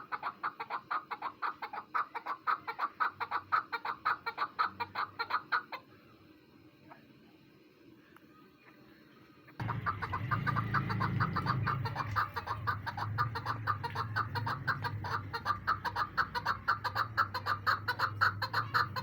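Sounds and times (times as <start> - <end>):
partridge clucking call: 0.0 - 5.9, 9.6 - 19.0
steady low hum: 5.8 - 19.0.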